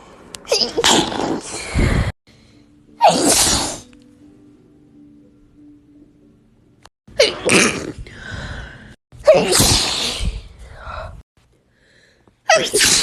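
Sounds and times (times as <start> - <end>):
person sneezing: 3.0 - 3.8, 9.2 - 10.4, 12.5 - 13.0.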